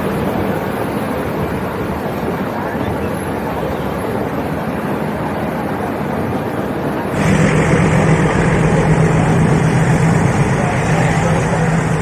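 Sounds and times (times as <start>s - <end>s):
steady low hum: 7.1s - 12.0s
train wheels rumbling: 7.1s - 12.0s.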